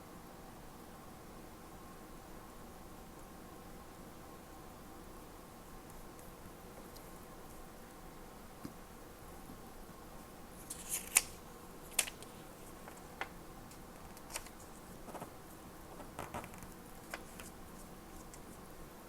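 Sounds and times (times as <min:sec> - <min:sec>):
small items clicking and tapping: 0:15.9 - 0:17.6.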